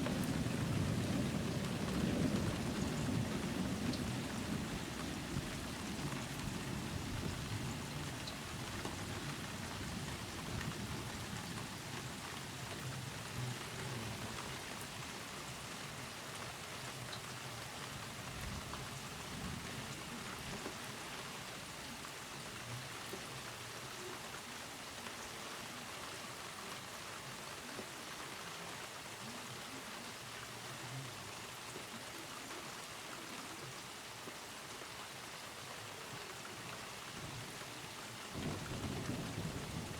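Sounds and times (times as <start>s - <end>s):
steady rain falling: 0.0s - 39.9s
low thunder rumble: 38.4s - 39.9s.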